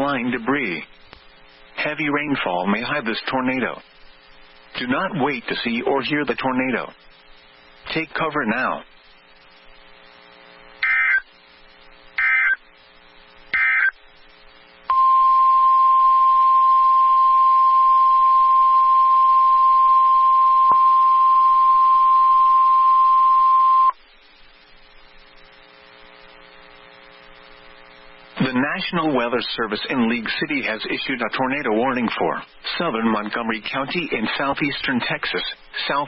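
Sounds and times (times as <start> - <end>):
faint low radio hum: 0.0 - 36.0
harsh digital data tone bursts: 10.8 - 11.3, 12.2 - 12.6
steady weather radio alert tone: 10.8 - 11.4, 12.2 - 12.6, 13.5 - 14.0, 14.9 - 24.0.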